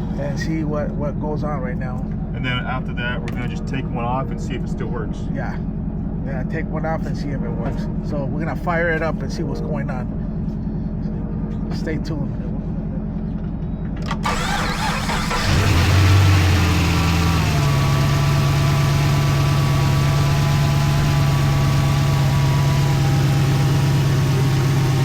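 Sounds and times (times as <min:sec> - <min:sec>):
car engine starting and idling: 0:14.0 - 0:25.0.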